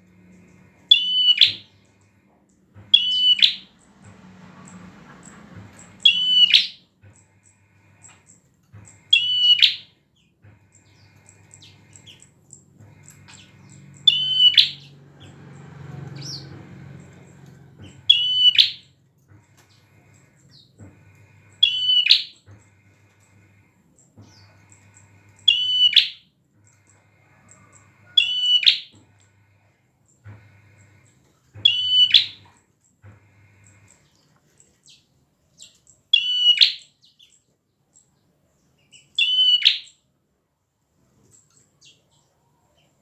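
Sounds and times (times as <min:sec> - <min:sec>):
bird singing loudly: 0:00.9 - 0:01.7, 0:02.9 - 0:03.7, 0:06.0 - 0:06.8, 0:09.1 - 0:09.9, 0:13.3 - 0:15.0, 0:18.0 - 0:18.9, 0:21.6 - 0:22.4, 0:25.5 - 0:26.2, 0:28.2 - 0:28.9, 0:31.6 - 0:32.4, 0:36.2 - 0:36.9, 0:39.2 - 0:39.9.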